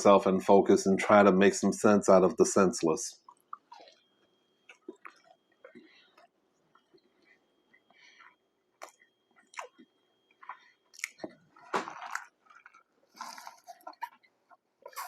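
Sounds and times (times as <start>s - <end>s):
chewing and eating: 3.2s - 15.0s.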